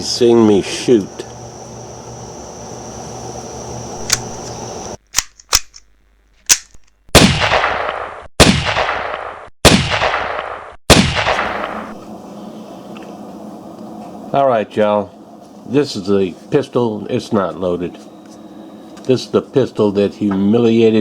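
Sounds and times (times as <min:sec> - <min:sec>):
pistol shots: 0:07.2 - 0:12.0.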